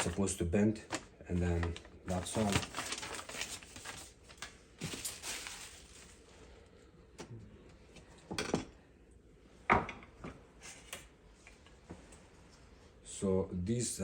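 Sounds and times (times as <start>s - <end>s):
objects being handled: 0.9s - 6.2s.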